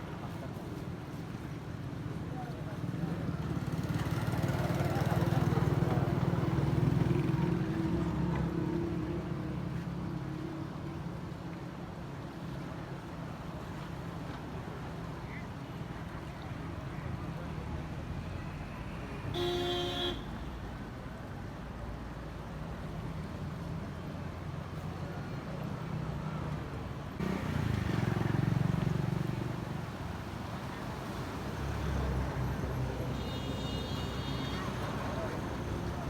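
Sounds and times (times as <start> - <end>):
road traffic rumble: 0.0 - 36.0
vehicle horn toot: 19.3 - 20.3, 33.1 - 34.8
vehicle engine passing: 27.2 - 33.1.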